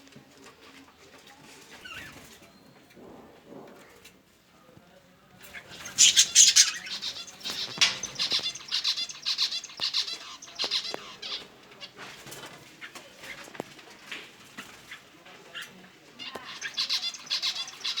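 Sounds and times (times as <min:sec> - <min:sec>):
birds flapping wings: 0:05.4 - 0:18.0.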